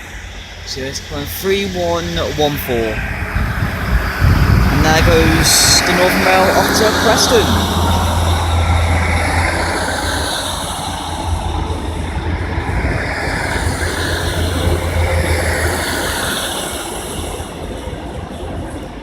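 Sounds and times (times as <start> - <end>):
train pulling out with low drone: 0.0 - 19.0.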